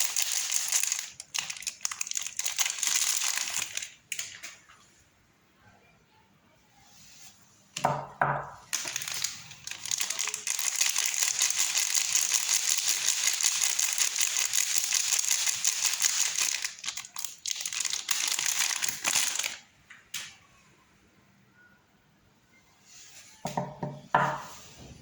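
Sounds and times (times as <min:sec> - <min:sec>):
wrapper crinkling: 0:00.0 - 0:04.7, 0:08.6 - 0:19.7.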